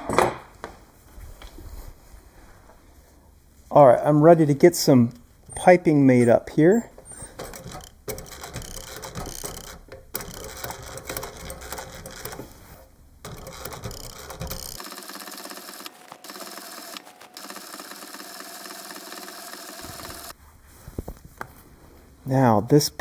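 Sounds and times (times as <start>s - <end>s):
sewing machine stitching leather: 13.3s - 20.3s.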